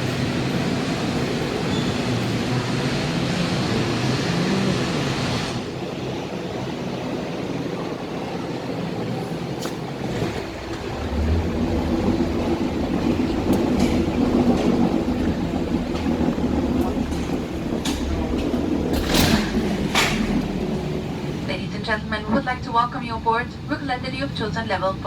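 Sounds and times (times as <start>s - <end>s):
vehicle rumble: 9.6s - 22.8s
deep hum: 10.2s - 22.3s.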